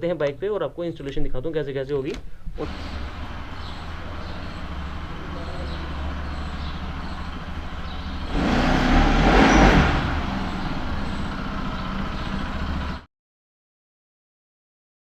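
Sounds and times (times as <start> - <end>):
vehicle engine hum: 2.6 - 13.1.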